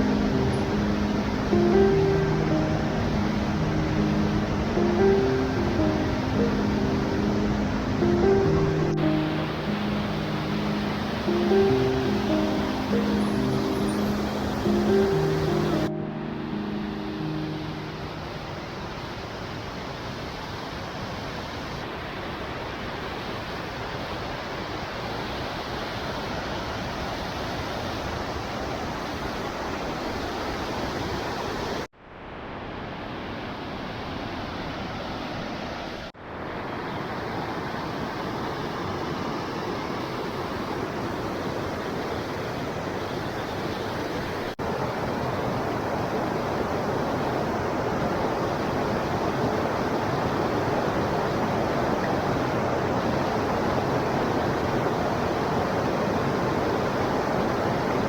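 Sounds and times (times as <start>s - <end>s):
waterfall rushing: 0.0s - 23.4s.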